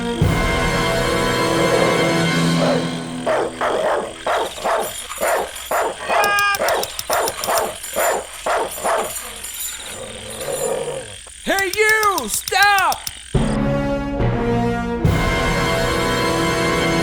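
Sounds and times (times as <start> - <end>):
dog barking: 2.6 - 11.2.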